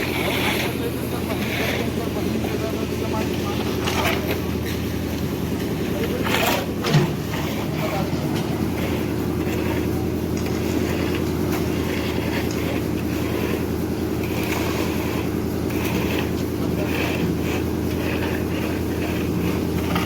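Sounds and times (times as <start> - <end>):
faint voices: 0.0 - 12.9
low machine drone: 0.0 - 20.0.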